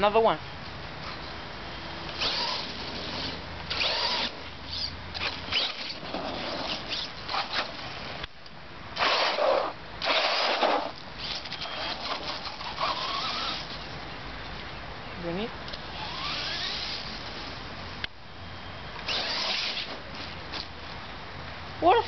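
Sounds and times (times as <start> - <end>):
toy truck motor whirring: 2.1 - 7.8, 9.0 - 13.8, 15.9 - 17.2, 19.0 - 20.0.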